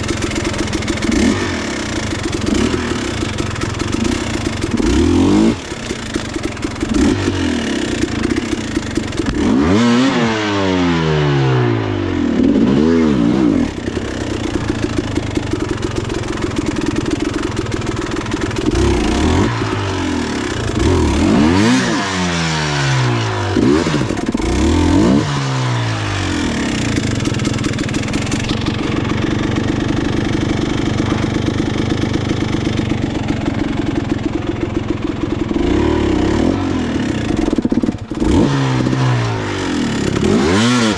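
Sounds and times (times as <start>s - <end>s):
dirt bike engine revving: 0.0s - 40.9s.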